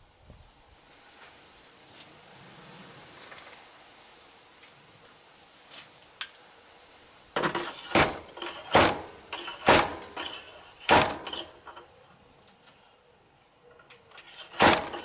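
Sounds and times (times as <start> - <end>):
metal parts clanking: 7.4 - 12.0, 13.8 - 15.0.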